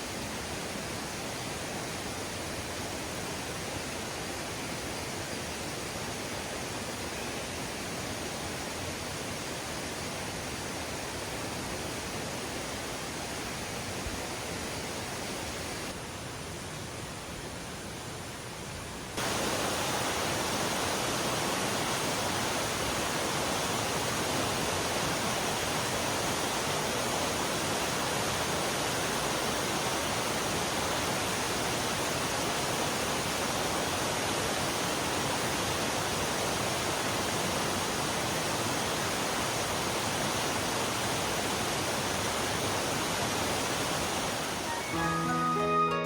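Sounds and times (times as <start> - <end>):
stream running over rocks: 0.0 - 44.9
music: 44.7 - 46.0.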